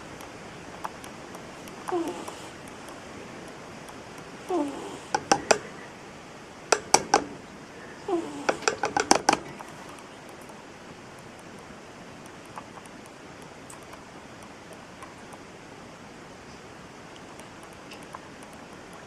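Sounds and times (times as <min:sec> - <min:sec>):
faint background noise: 0:00.0 - 0:19.0
ferret snoring snorts: 0:01.8 - 0:02.6, 0:04.4 - 0:05.7, 0:08.0 - 0:09.1.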